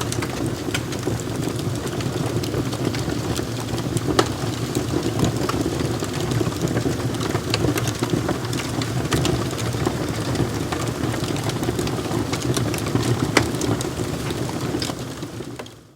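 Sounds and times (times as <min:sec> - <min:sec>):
wood fire crackling: 0:00.0 - 0:15.9.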